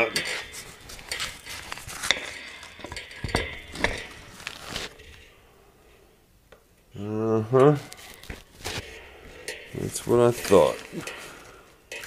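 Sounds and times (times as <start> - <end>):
metal tools clinking: 0.0 - 5.2, 8.7 - 12.0.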